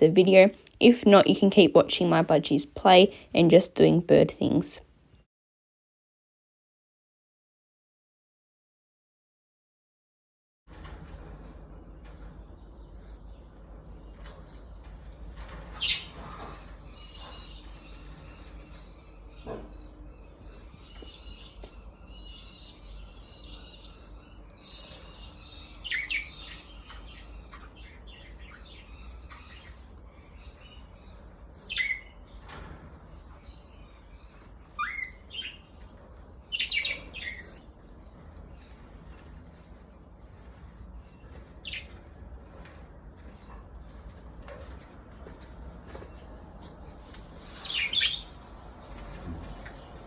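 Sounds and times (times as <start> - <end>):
budgerigars chirping and warbling: 15.4 - 32.7, 33.3 - 37.8, 41.0 - 42.0, 47.6 - 48.4.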